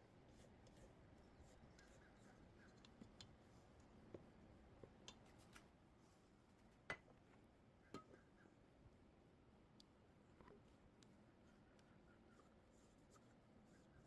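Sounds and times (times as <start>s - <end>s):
light clicks and taps: 2.7s - 5.7s.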